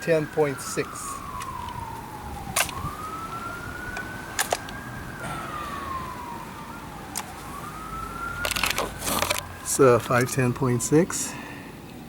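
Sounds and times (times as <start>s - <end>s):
siren wailing: 0.0s - 12.0s
sharp clicks: 3.9s - 4.8s.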